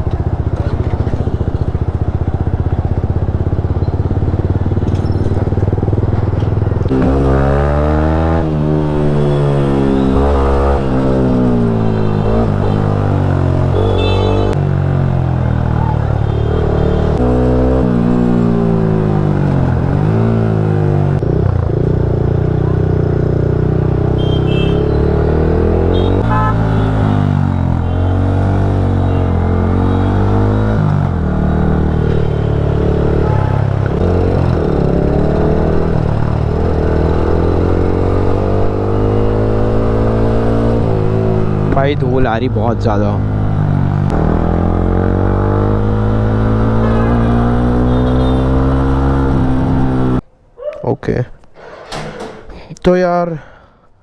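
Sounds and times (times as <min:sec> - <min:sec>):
motorcycle engine running: 0:00.0 - 0:41.8.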